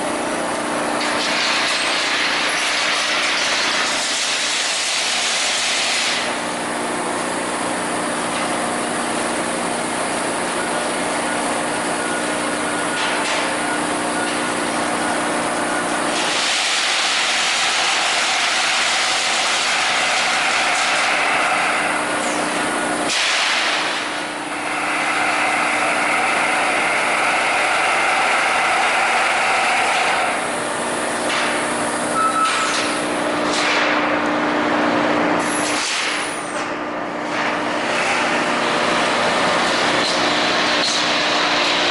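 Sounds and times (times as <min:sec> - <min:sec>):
punch press machine hum: 0:00.0 - 0:41.9
short sharp machine sounds: 0:16.0 - 0:30.5, 0:31.3 - 0:34.1, 0:35.4 - 0:36.7.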